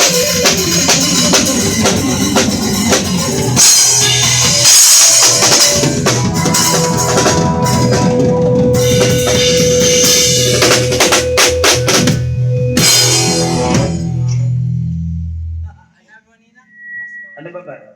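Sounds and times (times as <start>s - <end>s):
drum fill: 0.0s - 14.3s
live band music: 0.0s - 14.6s.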